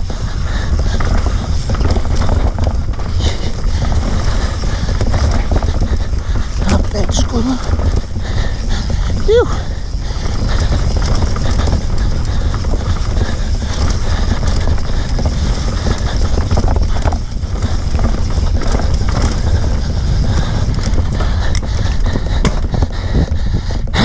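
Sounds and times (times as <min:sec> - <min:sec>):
bike rattling: 0:00.0 - 0:24.0
wind rumbling on microphone: 0:00.0 - 0:24.0.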